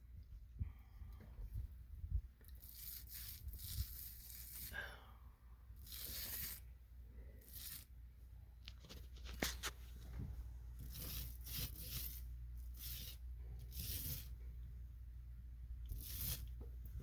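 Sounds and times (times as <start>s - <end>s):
paint rasping on ceiling: 2.4s - 5.0s, 5.7s - 8.0s, 8.9s - 14.5s, 15.9s - 17.0s.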